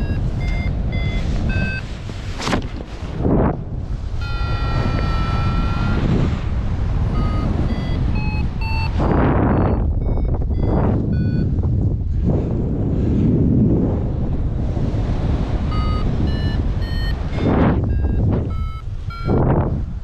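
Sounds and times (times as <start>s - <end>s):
variometer beeping: 0.0s - 2.3s, 4.1s - 12.0s, 15.6s - 19.8s
wind noise on microphone: 0.0s - 20.0s.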